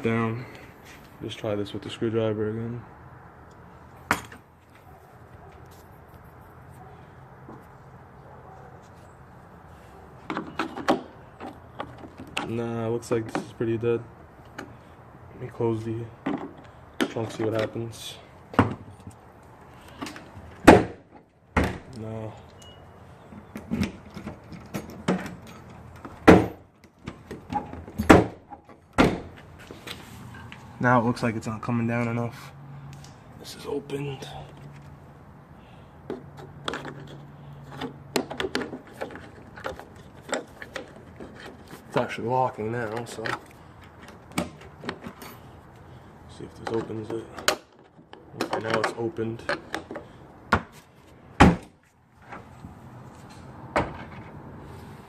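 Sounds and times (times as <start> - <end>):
screwdriver prying at metal latch: 36.1 - 42.1, 46.6 - 50.7.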